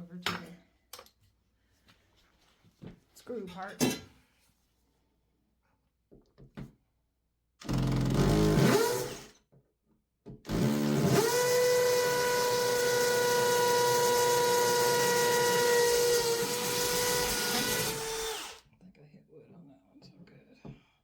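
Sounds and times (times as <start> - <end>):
power drill boring through tile: 7.6 - 9.4, 10.5 - 18.6.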